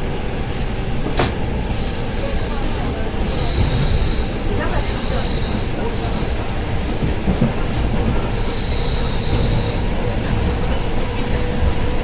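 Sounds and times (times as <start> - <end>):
train wheels rumbling on track: 0.0 - 12.0
high wheel squeal: 1.8 - 12.0.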